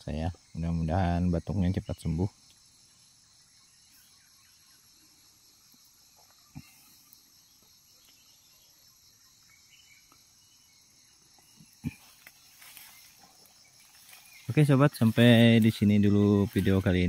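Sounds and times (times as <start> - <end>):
insects chirring: 0.0 - 17.0.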